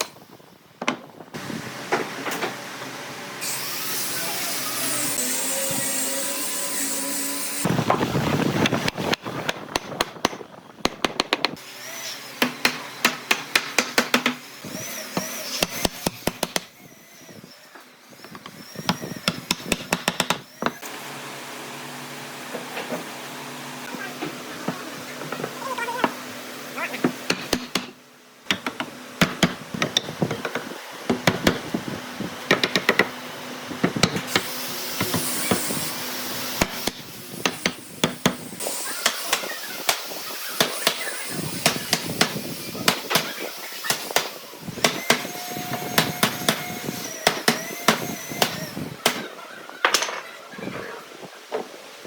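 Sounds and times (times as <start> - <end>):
hand tools knocking on wood: 19.2 - 20.4, 32.5 - 33.1.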